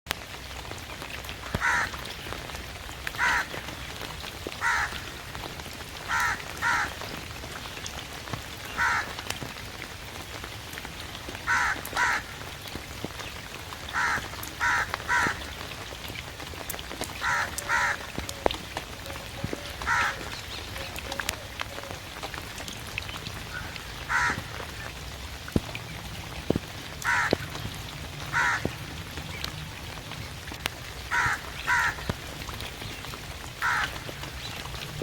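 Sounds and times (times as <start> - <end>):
falling rain hiss: 0.1 - 35.0
raven calling harshly: 1.6 - 1.9, 3.2 - 3.5, 4.6 - 5.0, 6.1 - 7.0, 8.8 - 9.2, 11.5 - 12.4, 13.9 - 15.4, 17.2 - 18.3, 19.0 - 20.3, 23.5 - 24.5, 27.0 - 27.4, 28.3 - 28.7, 31.1 - 32.0, 33.6 - 34.0.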